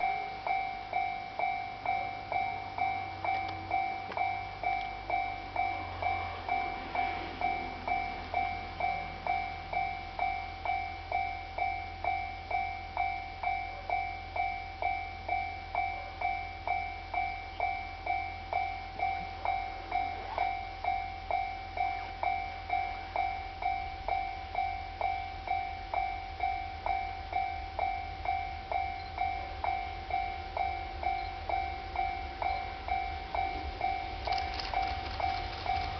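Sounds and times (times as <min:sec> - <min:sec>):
level-crossing warning bell: 0:00.0 - 0:35.9.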